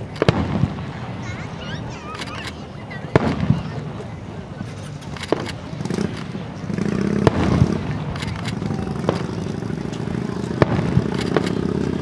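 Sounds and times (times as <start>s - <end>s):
fireworks bangs and cracks: 0.0s - 12.0s.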